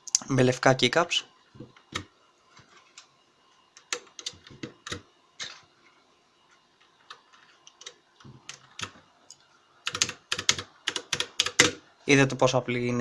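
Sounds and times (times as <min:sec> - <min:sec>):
keycaps clicking: 0:03.8 - 0:05.0, 0:09.9 - 0:11.8.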